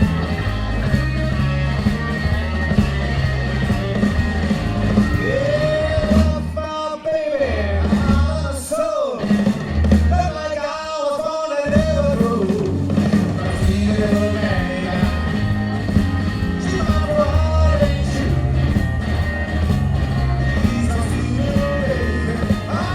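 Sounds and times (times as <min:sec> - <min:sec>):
blues band playing live: 0:00.0 - 0:22.9
person singing: 0:05.1 - 0:09.4, 0:10.1 - 0:15.6, 0:16.5 - 0:18.8, 0:20.4 - 0:22.9.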